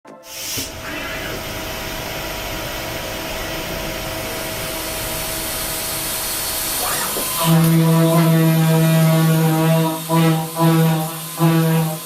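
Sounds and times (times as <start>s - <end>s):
milling machine rushing noise: 0.6s - 9.0s
spindle whine: 0.6s - 12.0s.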